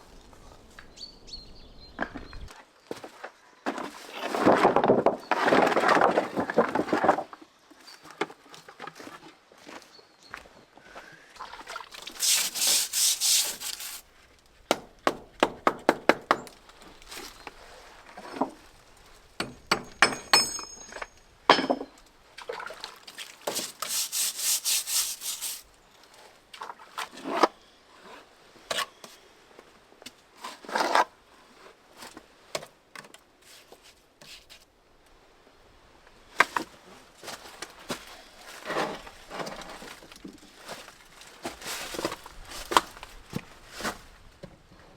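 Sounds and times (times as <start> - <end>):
rapid raspy scraping: 12.2 - 14.0, 23.8 - 25.6.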